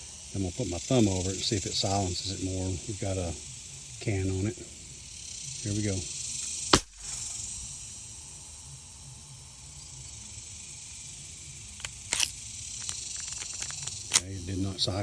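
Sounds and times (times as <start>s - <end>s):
steady high hiss: 0.0s - 15.0s
pistol handling clicks and clack: 11.8s - 14.3s.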